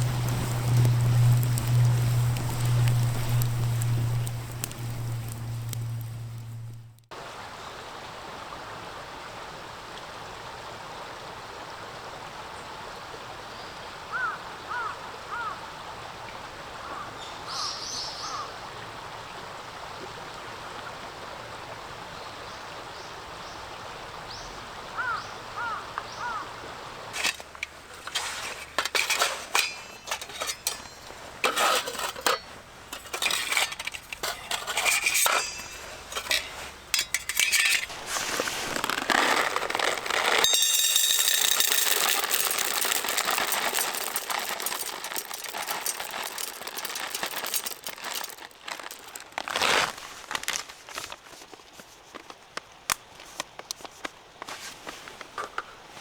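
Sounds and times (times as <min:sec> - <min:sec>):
metal camp gear clinking: 0:00.0 - 0:06.9, 0:27.2 - 0:51.4
stream running: 0:00.0 - 0:56.0.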